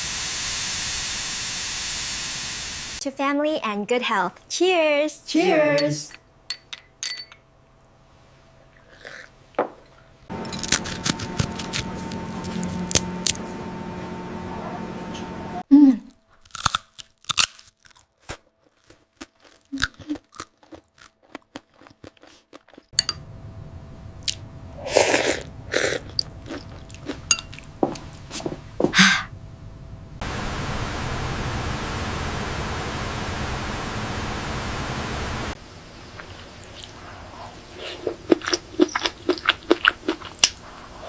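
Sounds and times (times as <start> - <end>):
people chewing and crunching: 10.3 - 13.6, 16.1 - 22.9, 24.2 - 28.3, 36.2 - 41.0.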